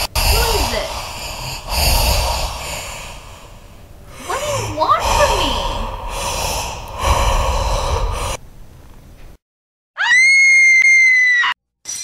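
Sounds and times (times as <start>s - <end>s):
loud rough breathy noise: 0.0s - 8.4s
high-pitched scream sound effect: 10.0s - 11.6s.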